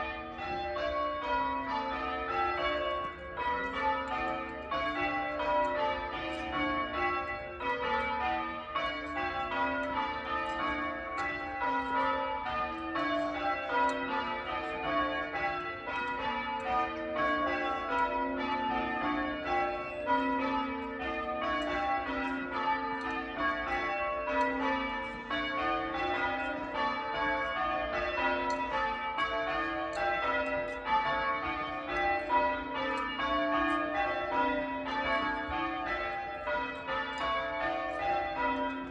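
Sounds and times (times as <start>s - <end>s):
church bells ringing: 0.0s - 38.9s.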